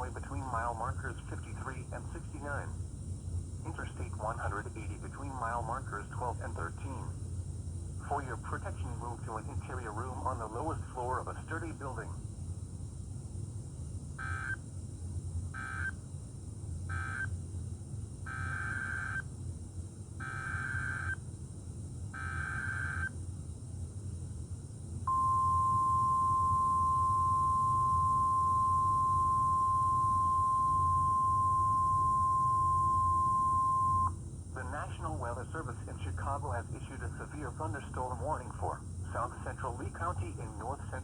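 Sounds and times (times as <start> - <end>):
steady warning alarm tone: 14.2 - 14.6, 15.6 - 16.0, 16.9 - 17.4, 18.3 - 19.3, 20.2 - 21.2, 22.2 - 23.2, 25.1 - 34.2
screechy digital data bursts: 20.2 - 21.2, 22.2 - 23.1.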